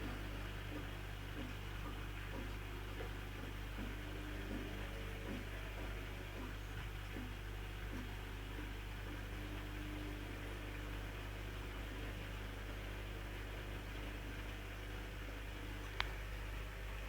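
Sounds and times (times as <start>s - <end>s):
washing machine spin cycle hum: 0.0s - 17.0s.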